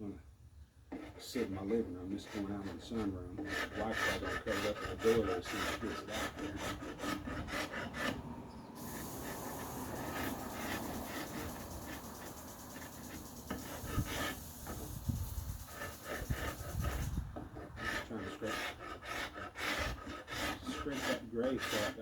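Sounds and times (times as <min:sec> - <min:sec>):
chisel scraping wood: 0:00.9 - 0:08.2, 0:08.8 - 0:22.0
steady rubbing hiss: 0:08.8 - 0:22.0.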